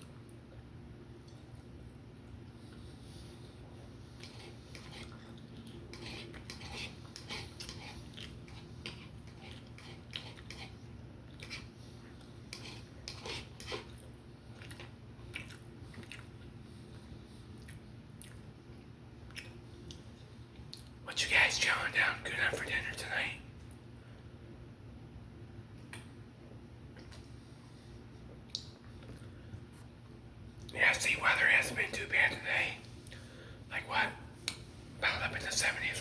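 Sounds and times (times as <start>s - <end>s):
steady low hum: 0.0s - 36.0s
person chewing and crunching food: 3.6s - 21.0s.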